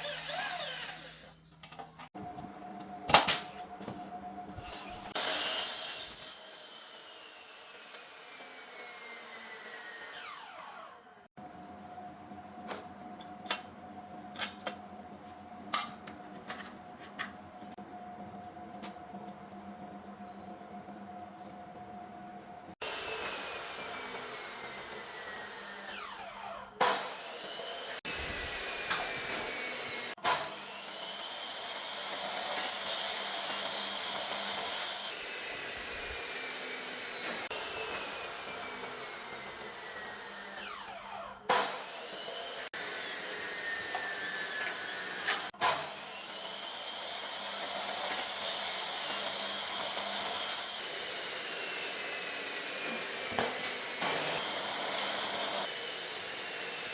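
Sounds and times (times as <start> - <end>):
power tool whirring: 0.0 - 1.4, 4.6 - 11.3, 22.8 - 56.9.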